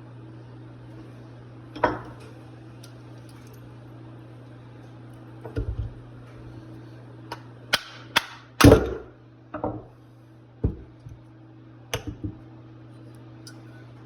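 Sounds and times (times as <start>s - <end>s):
tools knocking on workbench: 8.7s - 9.9s, 10.6s - 10.9s.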